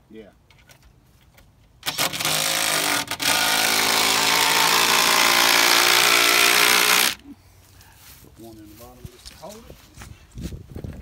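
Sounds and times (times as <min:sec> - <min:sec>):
power driver driving screw into wood: 0:01.8 - 0:07.2.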